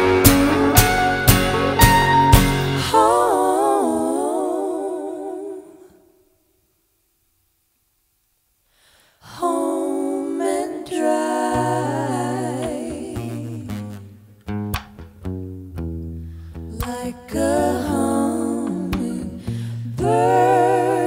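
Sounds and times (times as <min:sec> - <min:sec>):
strummed guitar chord: 0:00.0 - 0:02.8
voices singing close harmony: 0:00.0 - 0:06.1, 0:09.3 - 0:14.2, 0:16.9 - 0:21.0.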